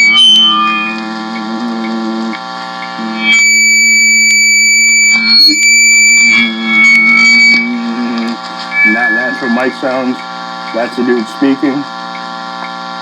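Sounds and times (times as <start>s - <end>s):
high-pitched whistling tones: 0.0s - 10.2s
man humming low notes: 0.0s - 12.1s.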